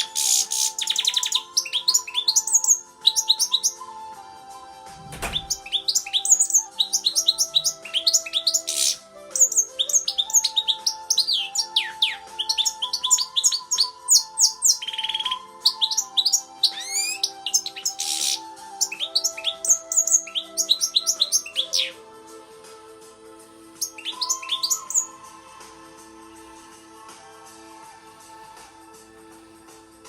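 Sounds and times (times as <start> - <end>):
goldfinch twittering song: 0.0 - 4.1, 5.0 - 22.0, 23.7 - 25.3
dull thump: 4.9 - 5.7.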